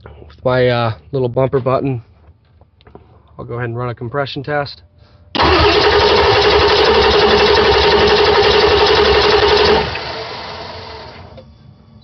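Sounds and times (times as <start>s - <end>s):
diesel engine starter cranking: 5.3s - 11.4s.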